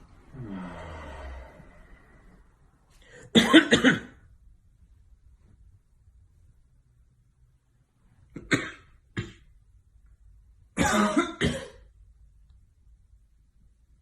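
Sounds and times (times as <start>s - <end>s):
person coughing: 3.3s - 4.2s, 8.4s - 9.5s, 10.8s - 11.9s.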